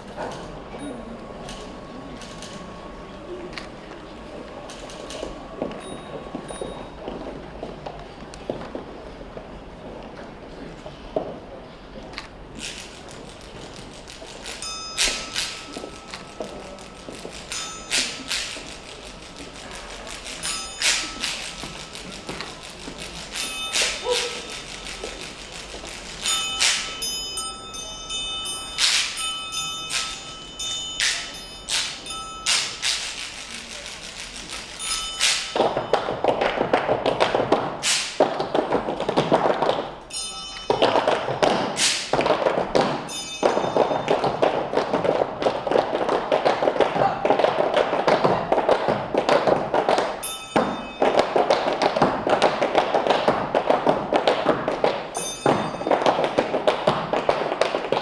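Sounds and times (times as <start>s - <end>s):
bell-like dings: 4.7s - 7.7s, 14.0s - 37.5s, 40.1s - 46.1s, 50.1s - 53.0s, 55.1s - 58.0s
music: 12.6s - 35.9s
tap shoes striking floor: 40.7s - 58.0s.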